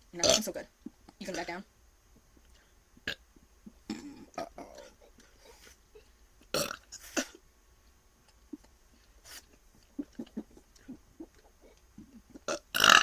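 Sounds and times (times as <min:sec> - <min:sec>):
person burping: 0:03.9 - 0:05.2, 0:06.5 - 0:07.4, 0:10.0 - 0:13.0.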